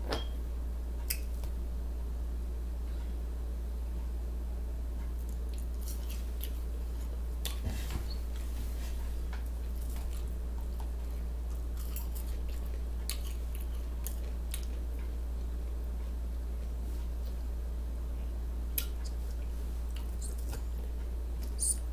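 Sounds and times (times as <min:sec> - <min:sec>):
low electrical hum: 0:00.0 - 0:21.9
person chewing with wet smacks: 0:05.0 - 0:07.6, 0:09.3 - 0:17.4, 0:18.2 - 0:21.9.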